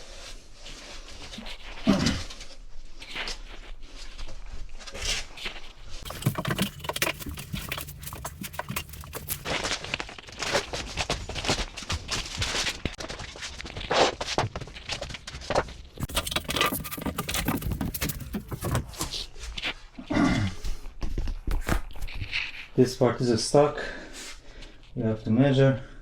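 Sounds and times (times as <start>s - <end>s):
scraping and tapping of vinyl planks: 6.0s - 19.3s.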